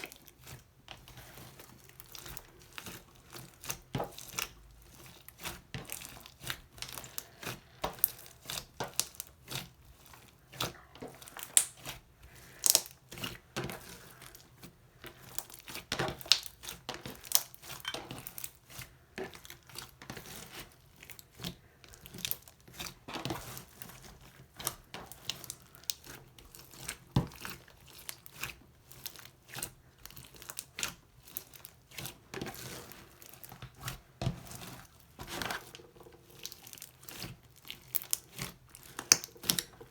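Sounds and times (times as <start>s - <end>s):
slime squished by hand: 2.0s - 19.9s.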